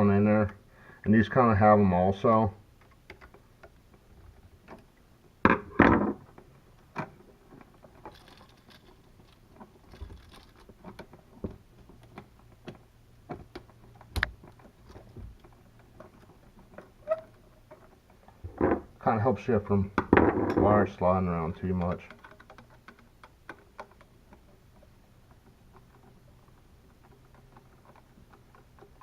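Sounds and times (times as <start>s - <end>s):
handling noises: 5.5s - 29.0s
screwdriver clicks and knocks: 10.9s - 14.4s.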